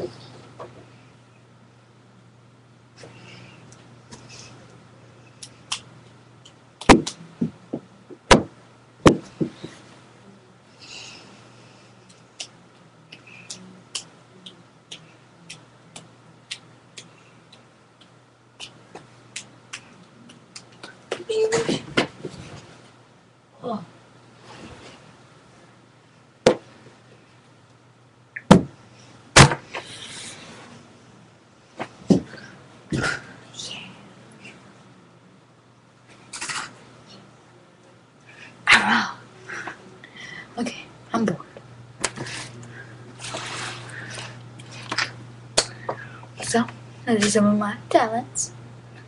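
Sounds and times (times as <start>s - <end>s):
steady low hum: 0.0s - 49.0s.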